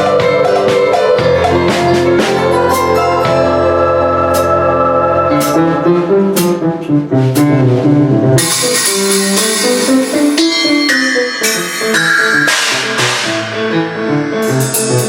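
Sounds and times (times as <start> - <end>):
bass line: 0.0 - 15.0
keyboard chords: 0.0 - 15.0
cymbal wash: 8.4 - 15.0
sharp drum hits: 8.4 - 15.0.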